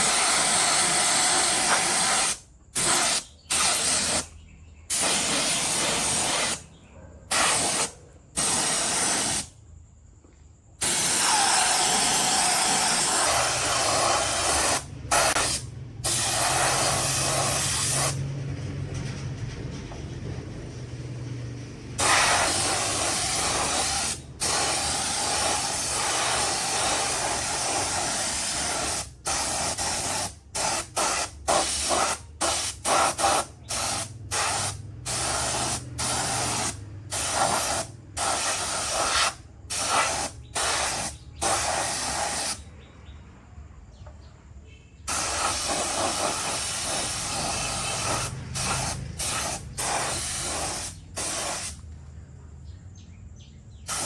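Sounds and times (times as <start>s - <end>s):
compressed air spray hissing: 0.0s - 4.3s, 4.9s - 6.6s, 7.3s - 9.6s, 10.8s - 18.2s, 22.0s - 42.6s, 45.1s - 51.8s.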